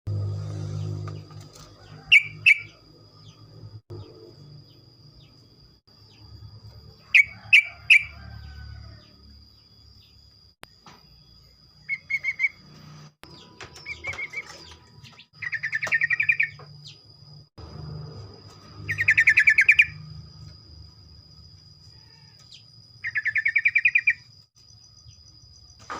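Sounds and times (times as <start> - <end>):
bulbul rattling trills: 1.8 - 3.4.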